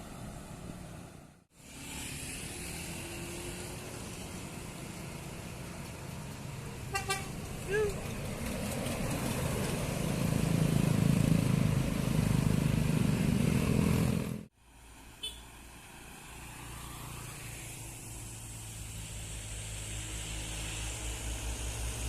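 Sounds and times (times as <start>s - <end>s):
diesel bus engine climbing: 0.0s - 15.0s
low traffic engine hum: 0.0s - 22.0s.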